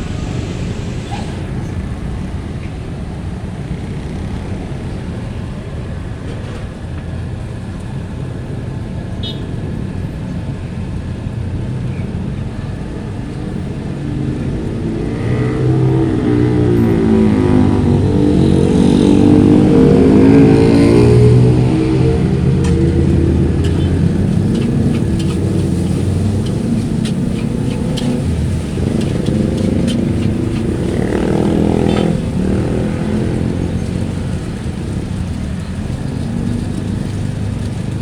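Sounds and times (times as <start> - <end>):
vehicle engine passing: 0.0 - 5.5, 13.5 - 38.0
traffic engine rumble: 0.0 - 38.0.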